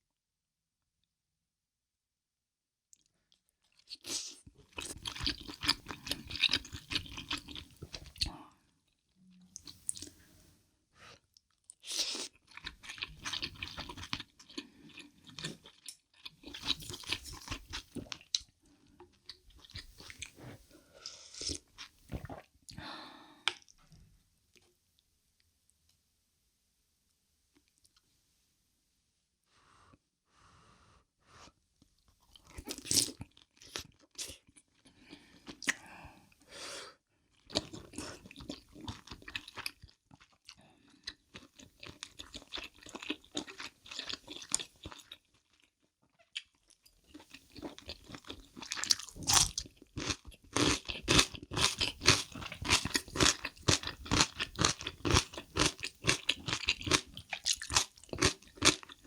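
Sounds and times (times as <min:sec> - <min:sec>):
crunchy chewing: 0:03.7 - 0:08.3, 0:37.5 - 0:45.6, 0:46.3 - 0:59.0.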